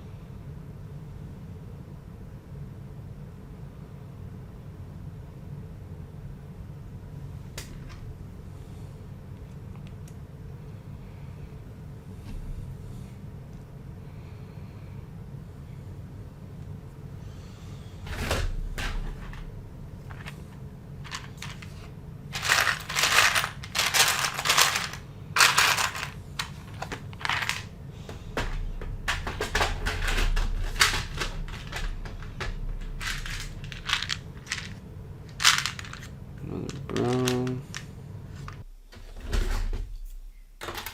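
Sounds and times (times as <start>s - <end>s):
plastic pieces clattering: 20.0s - 20.4s, 21.0s - 27.7s, 28.4s - 38.6s.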